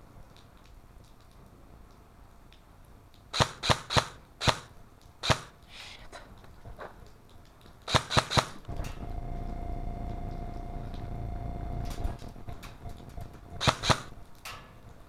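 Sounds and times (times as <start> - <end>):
airsoft gun shots: 3.3 - 5.6, 7.9 - 8.6, 13.6 - 14.2
steady hum: 8.6 - 15.0.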